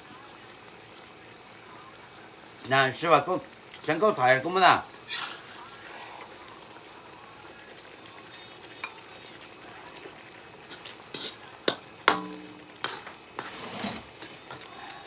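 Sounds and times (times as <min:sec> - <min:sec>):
food sizzling in a pan: 0:00.0 - 0:15.0
utensil knocking on pan: 0:11.7 - 0:13.1.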